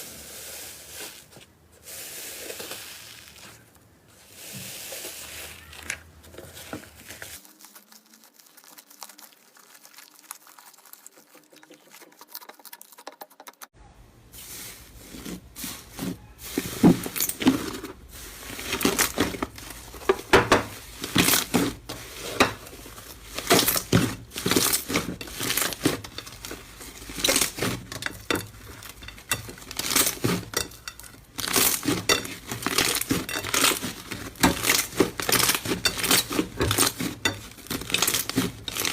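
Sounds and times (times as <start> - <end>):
slime crackling and popping: 7.3 - 12.0, 22.9 - 38.9.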